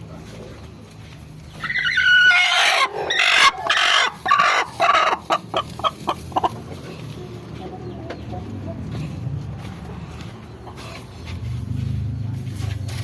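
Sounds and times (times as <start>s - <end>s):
chicken clucking: 0.1s - 13.0s
chicken drawn-out call: 1.5s - 6.6s.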